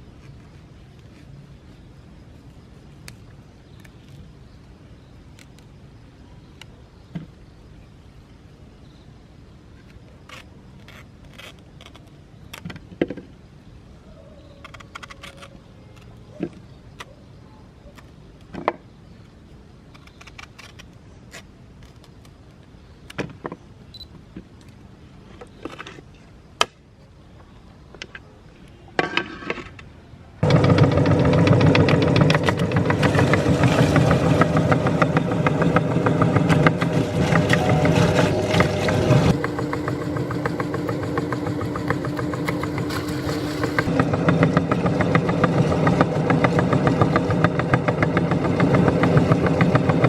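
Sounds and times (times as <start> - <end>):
clatter: 30.4 - 50.0.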